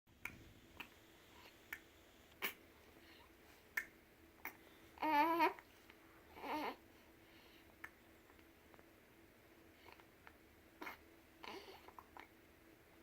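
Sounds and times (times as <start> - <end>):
baby babbling: 5.0 - 5.6, 6.3 - 6.8.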